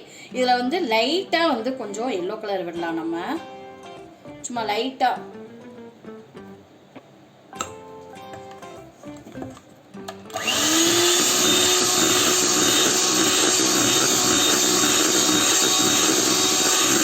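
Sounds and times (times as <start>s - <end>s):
soft guitar music: 0.6s - 10.4s
electric mixer motor: 10.3s - 17.0s.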